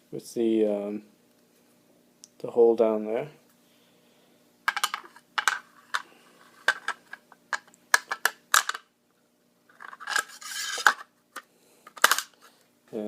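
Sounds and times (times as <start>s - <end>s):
metal scraping on metal: 9.8s - 11.0s.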